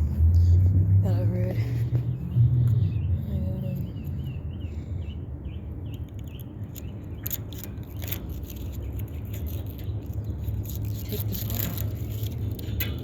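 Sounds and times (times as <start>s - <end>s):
low steady hum: 0.0s - 13.0s
small birds chirping: 0.3s - 13.0s
sharp clicks and scrapes: 5.9s - 13.0s.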